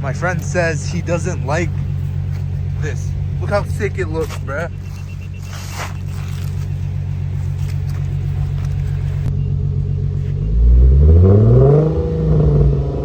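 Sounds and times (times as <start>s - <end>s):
car engine idling and revving: 0.0s - 13.0s.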